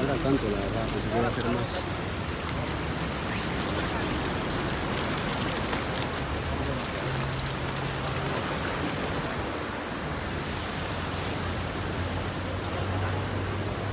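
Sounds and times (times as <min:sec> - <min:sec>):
faint crackling ticks: 0:00.0 - 0:09.1.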